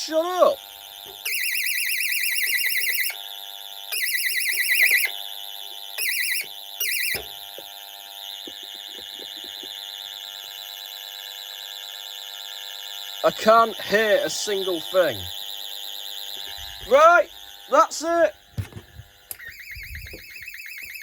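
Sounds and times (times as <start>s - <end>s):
fast warbling alarm tone: 0.4s - 3.2s, 3.9s - 7.2s, 8.1s - 18.4s, 19.3s - 21.0s
steady electronic tone: 19.0s - 21.0s.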